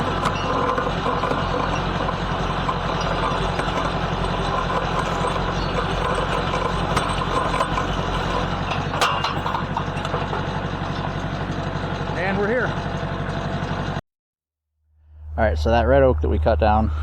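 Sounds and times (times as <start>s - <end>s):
tractor engine droning: 0.0s - 14.0s, 15.0s - 17.0s.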